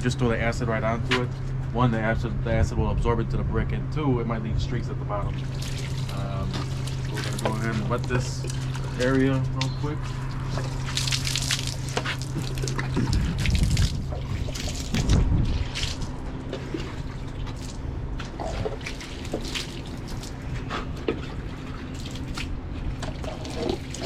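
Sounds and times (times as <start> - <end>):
water trickling down brickwork: 5.3 - 24.0
water splashing on brick wall: 5.4 - 9.0, 10.5 - 20.4, 21.6 - 24.0.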